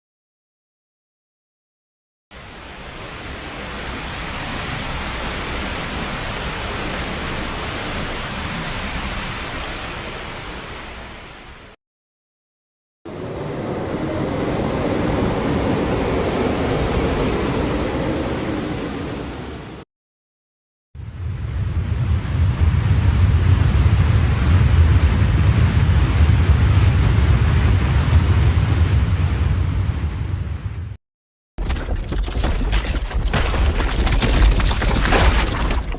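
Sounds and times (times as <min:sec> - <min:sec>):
rushing wind roar: 0:13.1 - 0:19.8, 0:21.0 - 0:31.0.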